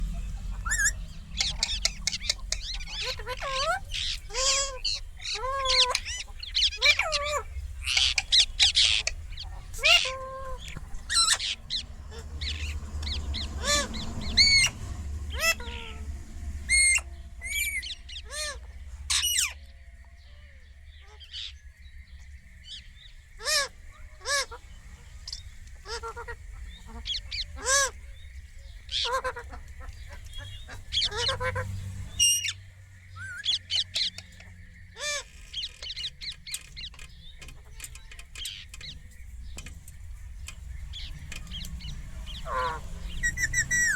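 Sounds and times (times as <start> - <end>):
parrot squawking: 0.0 - 19.6, 25.2 - 28.1, 28.7 - 32.6, 41.0 - 43.9
steady low hum: 0.0 - 43.9.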